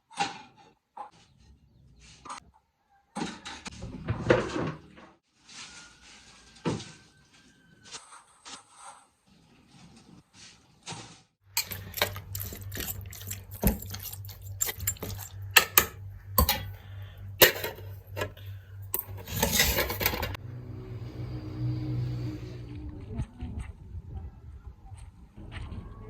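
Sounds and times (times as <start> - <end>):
steady low hum: 11.5 - 24.6
dishes and utensils clicking: 11.6 - 16.8, 17.4 - 20.4.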